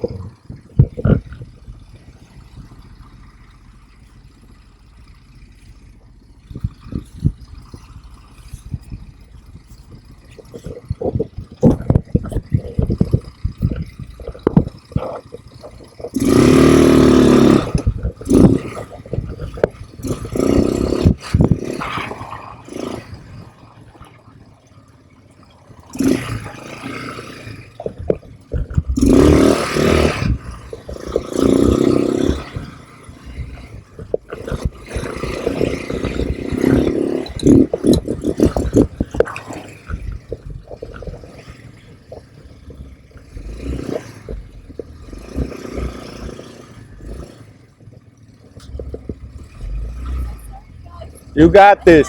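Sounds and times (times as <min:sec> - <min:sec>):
knocks and rattles: 0:00.0 - 0:21.8, 0:27.7 - 0:46.5
atv engine running: 0:00.0 - 0:52.0.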